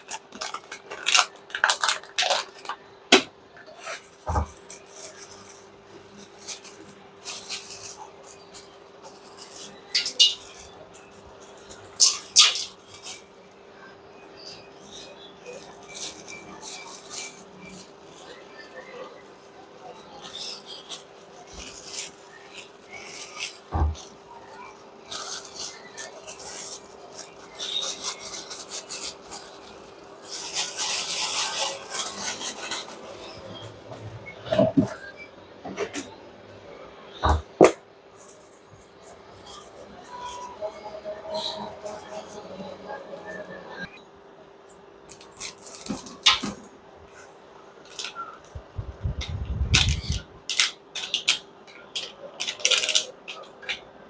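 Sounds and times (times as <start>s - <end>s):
utensils and containers clicking: 0.0s - 13.2s, 49.2s - 53.9s
scraping and rubbing strokes: 14.4s - 33.9s.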